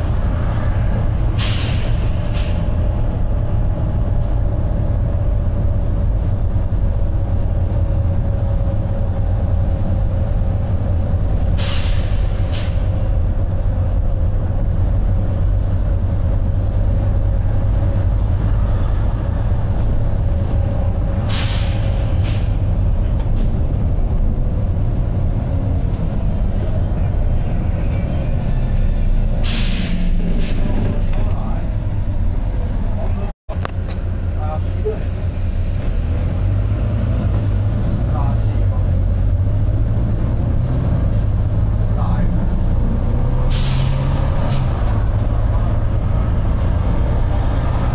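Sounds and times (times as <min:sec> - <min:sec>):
bus diesel engine rumbling: 0:00.0 - 0:47.9
air brake hisses: 0:01.4 - 0:02.7, 0:11.6 - 0:12.9, 0:21.2 - 0:22.6, 0:29.4 - 0:30.6, 0:43.4 - 0:44.1.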